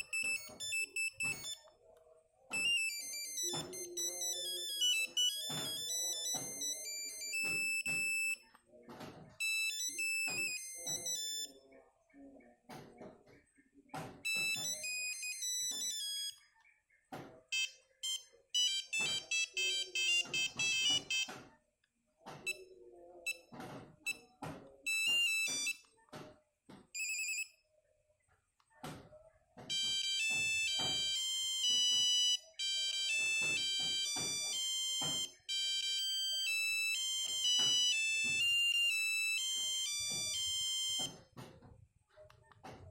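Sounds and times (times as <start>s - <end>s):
beeping ringtone melodies: 0.0s - 1.6s, 2.5s - 8.4s, 9.4s - 11.6s, 14.2s - 16.4s, 17.5s - 21.4s, 24.9s - 25.8s, 27.0s - 27.5s, 29.7s - 41.2s.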